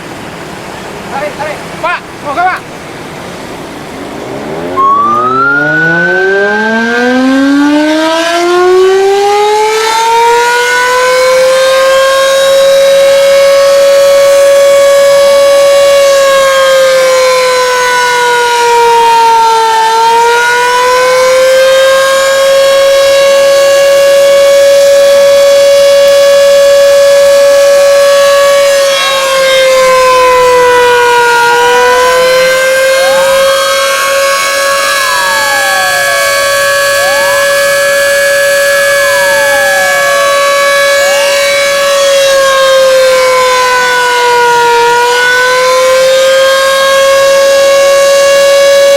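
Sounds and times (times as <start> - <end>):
loud siren wail: 1.1 - 48.9
faint rising and falling tones: 2.8 - 8.6.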